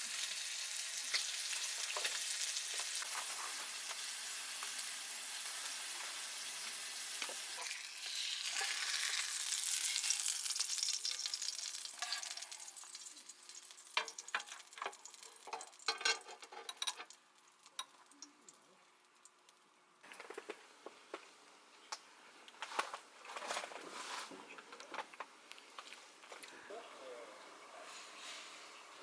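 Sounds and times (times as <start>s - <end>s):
food sizzling in a pan: 0.0s - 18.7s.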